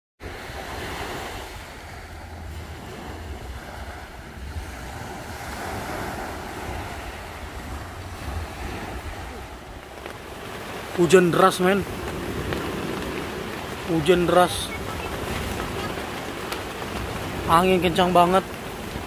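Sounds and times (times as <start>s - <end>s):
strong wind on microphone: 0.2s - 19.0s
heavy rain rushing: 4.4s - 19.0s.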